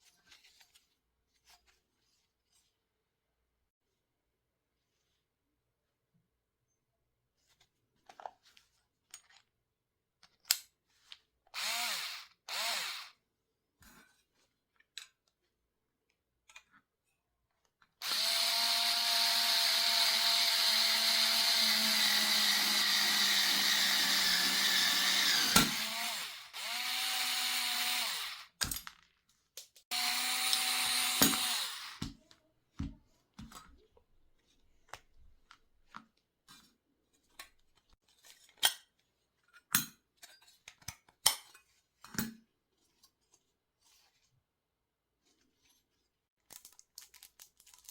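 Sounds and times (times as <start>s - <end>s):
electric drill running: 11.6s - 13.2s, 18.0s - 28.6s, 29.9s - 32.1s.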